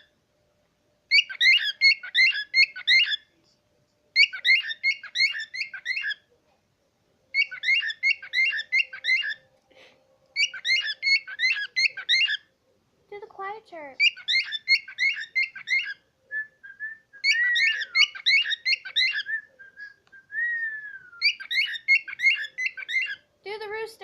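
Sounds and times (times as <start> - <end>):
pet bird chirping: 1.1 - 3.3, 4.2 - 6.3, 7.3 - 9.5, 10.4 - 12.5, 13.8 - 16.0, 17.2 - 19.8, 21.2 - 23.3.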